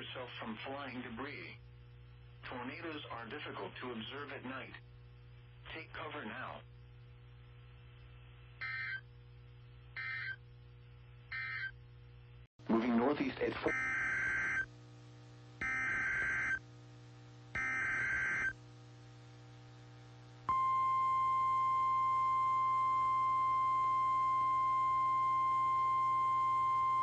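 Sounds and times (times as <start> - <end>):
steady warning alarm tone: 8.6 - 9.0, 10.0 - 10.4, 11.3 - 11.7, 13.7 - 14.7, 15.6 - 16.6, 17.6 - 18.6.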